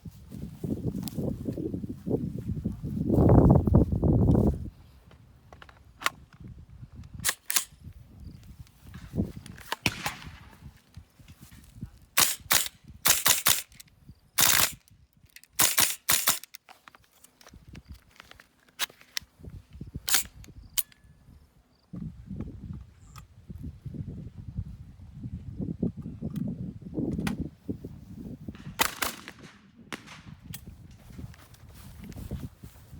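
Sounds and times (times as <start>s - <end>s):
airsoft rifle firing single shots: 9.6s - 10.7s, 12.2s - 13.8s, 14.4s - 14.8s, 15.5s - 16.5s, 28.7s - 30.5s.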